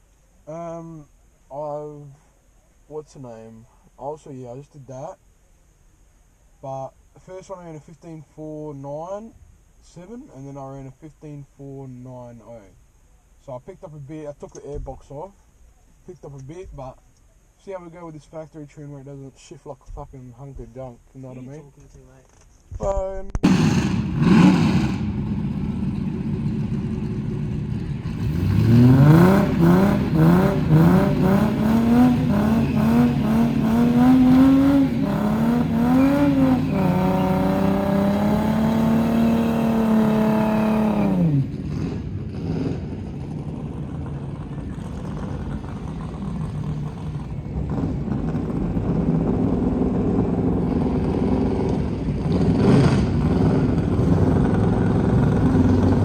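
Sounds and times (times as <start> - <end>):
car engine revving: 23.4 - 56.0
low engine rumble: 23.4 - 56.0.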